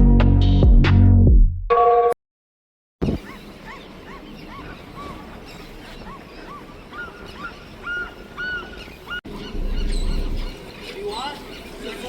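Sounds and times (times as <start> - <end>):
flock of birds calling: 3.2 - 12.0
low rumble: 9.3 - 10.6.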